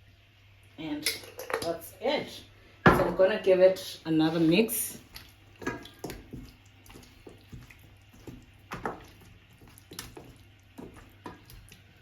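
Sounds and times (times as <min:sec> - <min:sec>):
chicken squelching in marinade: 0:04.2 - 0:12.0.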